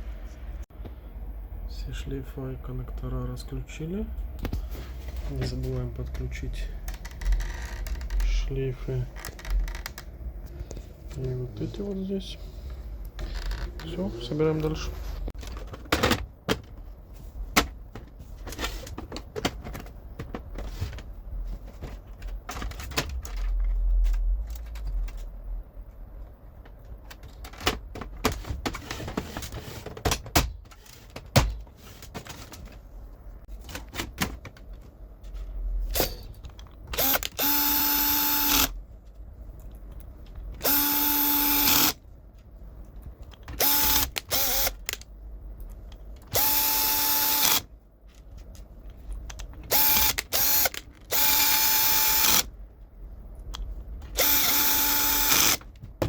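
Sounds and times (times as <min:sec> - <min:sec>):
electric screwdriver driving screws: 0:37.0 - 0:38.7, 0:40.6 - 0:42.0, 0:43.6 - 0:44.8, 0:46.3 - 0:47.6, 0:49.7 - 0:52.5, 0:54.2 - 0:55.6.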